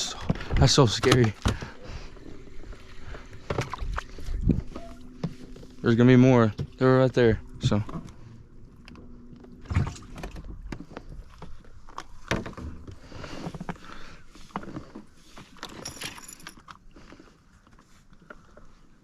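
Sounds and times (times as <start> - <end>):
fishing gear knocking and rattling: 14.5 - 16.8.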